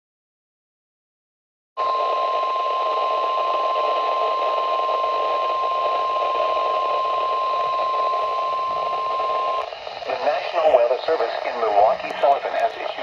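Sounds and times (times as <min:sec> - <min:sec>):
steady high alarm beep: 0:01.8 - 0:10.8
radio receiver hiss: 0:01.8 - 0:13.0.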